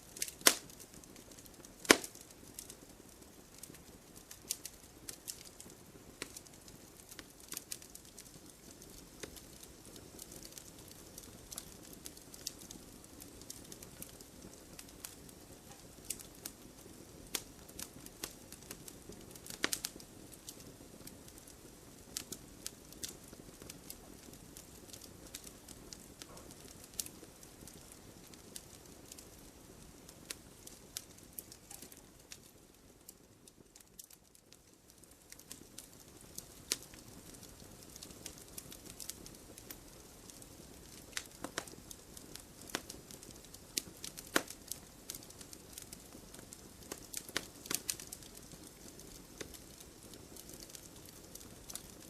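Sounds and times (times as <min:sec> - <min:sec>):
low rush of flames: 0:00.0 - 0:52.0
wood fire crackling: 0:00.0 - 0:52.0
sharp pops and snaps: 0:00.2 - 0:02.7, 0:30.3 - 0:32.4, 0:38.0 - 0:42.0, 0:42.6 - 0:49.6.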